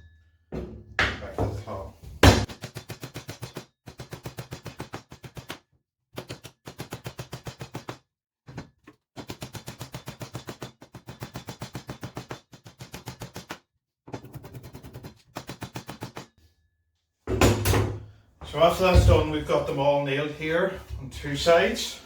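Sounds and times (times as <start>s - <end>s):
hammer striking nails into wood: 2.2s - 5.6s, 14.3s - 16.3s.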